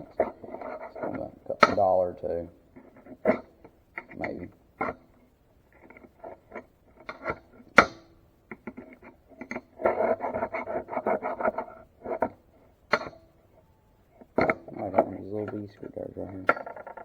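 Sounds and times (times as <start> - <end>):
sharp clack: 0.0 - 2.0, 6.5 - 8.8
small tool scraping metal holder: 0.0 - 17.0.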